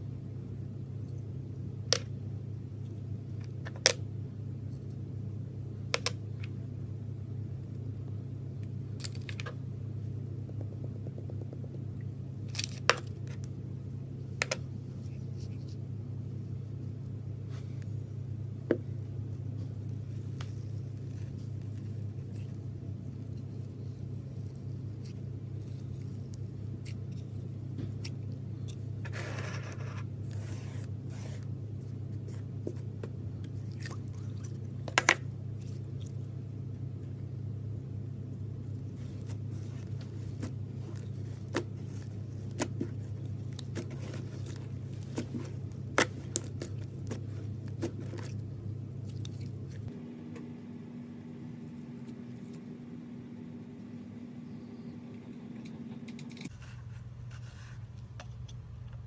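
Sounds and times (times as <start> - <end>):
steady low hum: 0.0 - 59.0
glitter slime squishing: 38.9 - 49.9.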